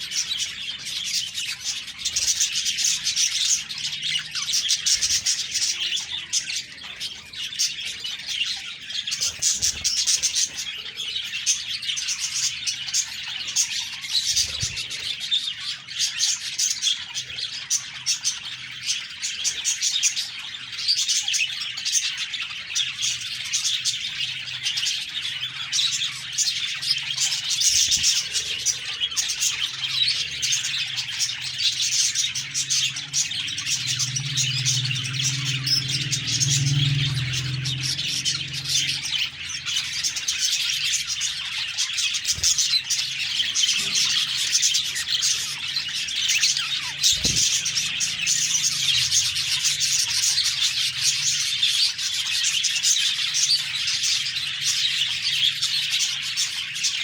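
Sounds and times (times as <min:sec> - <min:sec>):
budgerigars chirping and warbling: 0:00.0 - 0:57.0
low hum: 0:32.2 - 0:40.1.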